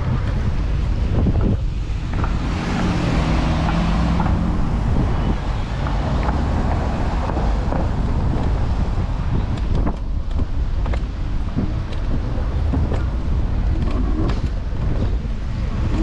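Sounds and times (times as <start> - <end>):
city street traffic: 0.0 - 16.0
wind buffeting microphone: 0.0 - 16.0.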